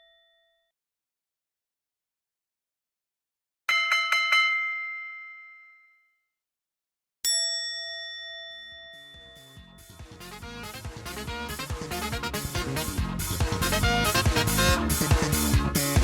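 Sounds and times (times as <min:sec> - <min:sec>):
background music: 0:09.2 - 0:16.0.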